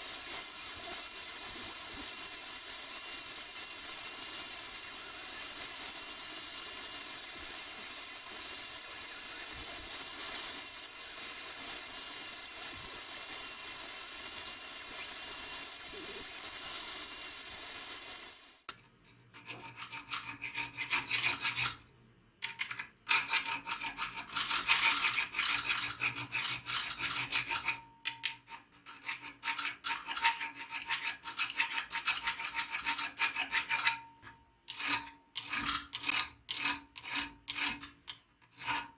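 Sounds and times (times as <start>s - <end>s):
power tool running: 0.0s - 18.7s
hand filing strokes on hatchet: 19.4s - 21.7s, 23.1s - 27.8s, 28.5s - 34.1s, 34.7s - 38.9s.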